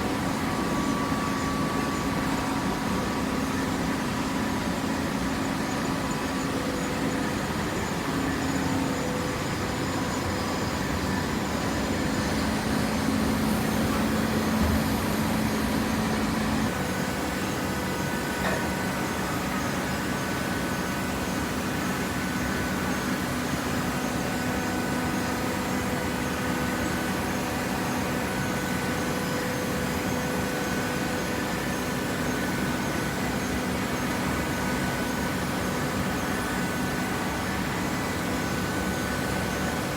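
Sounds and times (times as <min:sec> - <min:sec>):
hydraulic pump motor humming: 0:11.4 - 0:17.0.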